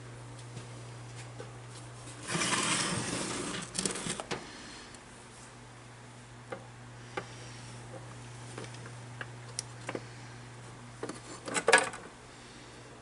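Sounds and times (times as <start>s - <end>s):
steady low hum: 0.0s - 13.0s
rustling scrape on workbench: 2.2s - 4.3s.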